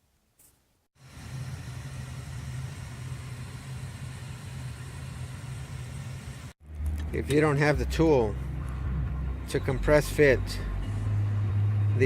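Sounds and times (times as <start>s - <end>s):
low mechanical hum with hiss: 1.0s - 6.6s.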